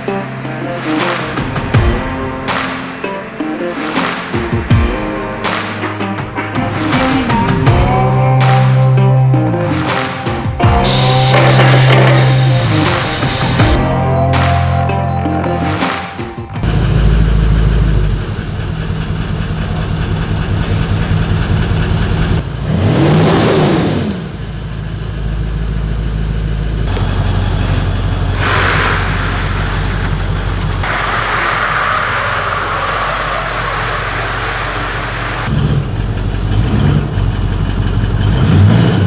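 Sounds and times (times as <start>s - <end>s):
car engine idling and revving: 10.8s - 13.8s, 16.6s - 39.0s.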